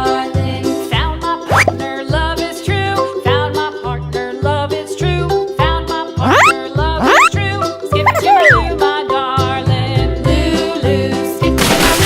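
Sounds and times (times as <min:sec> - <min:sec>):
upbeat children's music: 0:01.5 - 0:01.8, 0:06.2 - 0:07.3, 0:08.0 - 0:08.8.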